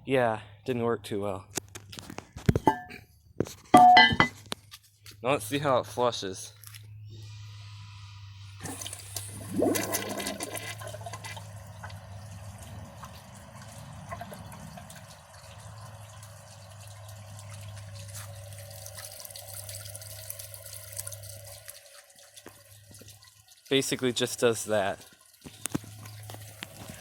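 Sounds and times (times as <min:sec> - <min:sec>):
toilet flush clatter: 0:08.6 - 0:12.0
water running into toilet bowl: 0:08.6 - 0:12.6, 0:13.6 - 0:27.0.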